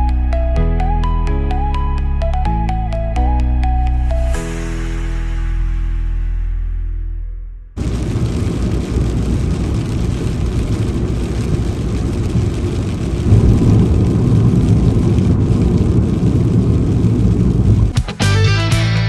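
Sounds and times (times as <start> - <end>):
car driving rumble: 7.8 - 17.9.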